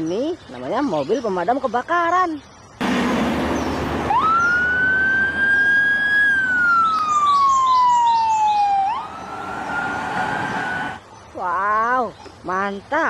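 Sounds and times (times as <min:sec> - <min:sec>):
fire engine siren wailing: 0:02.8 - 0:11.0.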